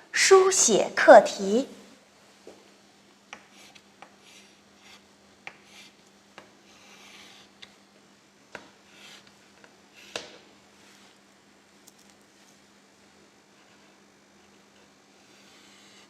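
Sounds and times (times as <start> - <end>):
faint steady hum: 0.0 - 16.0
pen scratching while writing: 3.3 - 6.0, 6.7 - 7.5, 8.9 - 9.3.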